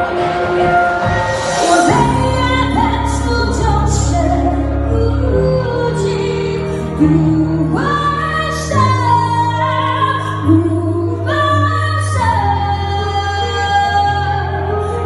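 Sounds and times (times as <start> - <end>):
slow ballad music: 0.0 - 15.0.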